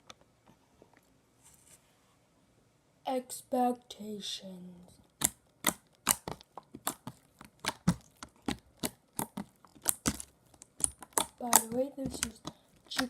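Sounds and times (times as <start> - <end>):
slime wet clicks and pops: 5.2 - 13.0.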